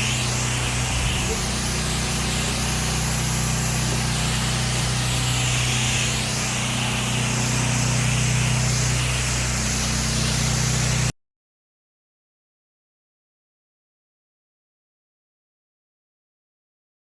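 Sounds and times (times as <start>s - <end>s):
pressure washer motor humming: 0.0s - 11.1s
water spray hitting walls: 0.0s - 11.1s.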